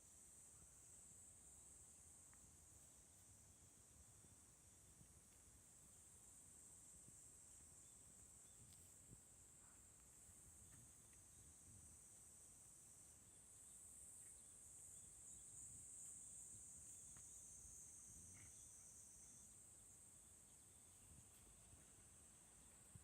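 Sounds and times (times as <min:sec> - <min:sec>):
high-pitched insect chorus: 0:00.0 - 0:23.0.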